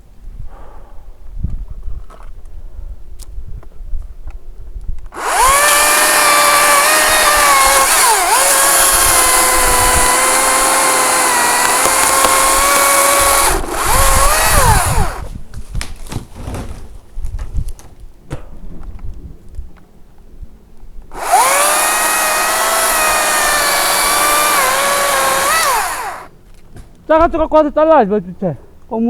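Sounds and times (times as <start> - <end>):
electric chainsaw cutting: 5.2 - 15.3, 21.1 - 26.3.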